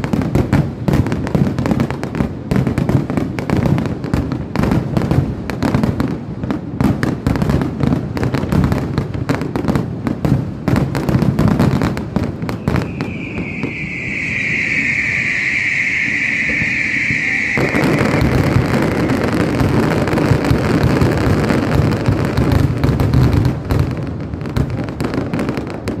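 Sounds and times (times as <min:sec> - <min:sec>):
fireworks bangs: 0:10.3 - 0:23.5
fireworks crackling: 0:12.5 - 0:21.4
high firework whistle: 0:12.5 - 0:21.7.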